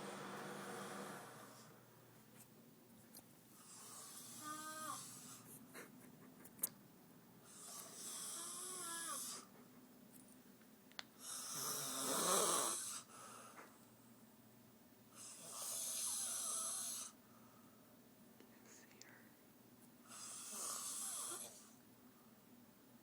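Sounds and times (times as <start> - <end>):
woman snoring loudly: 3.7 - 5.4, 7.5 - 9.5, 11.2 - 13.1, 15.3 - 17.2, 20.1 - 21.8.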